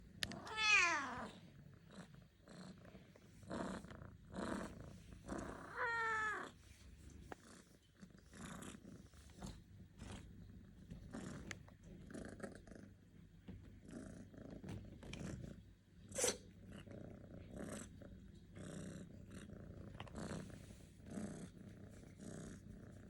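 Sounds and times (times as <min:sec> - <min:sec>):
cat purring: 0:00.0 - 0:23.0
cat meowing: 0:00.4 - 0:01.3, 0:05.6 - 0:06.5.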